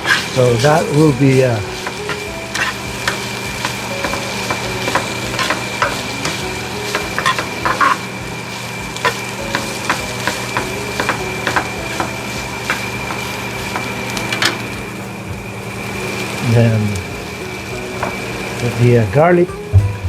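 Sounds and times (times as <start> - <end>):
stirring scrapes against pan: 0.0 - 8.0
chicken sizzling in oil: 0.0 - 19.8.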